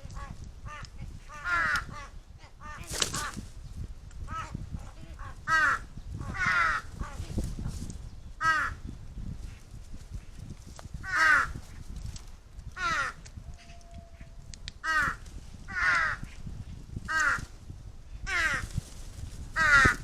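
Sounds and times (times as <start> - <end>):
wind rumble on microphone: 0.0 - 20.0
crows cawing: 0.7 - 3.3, 5.2 - 7.2, 8.4 - 8.8, 11.0 - 11.6, 12.8 - 16.3, 17.1 - 17.5, 18.3 - 18.7, 19.6 - 20.0.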